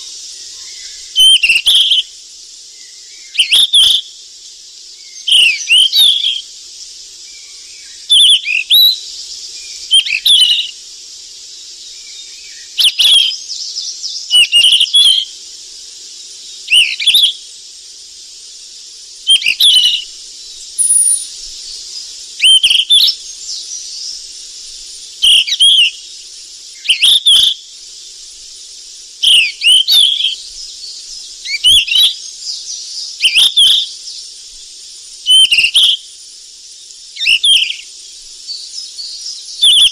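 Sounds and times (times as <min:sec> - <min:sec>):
bird singing whistled notes: 0:00.0 - 0:02.1, 0:02.7 - 0:04.2, 0:04.9 - 0:06.5, 0:07.2 - 0:10.8, 0:11.5 - 0:15.4, 0:16.4 - 0:17.6, 0:19.2 - 0:28.5, 0:29.2 - 0:39.9
steady high hiss: 0:00.0 - 0:39.9.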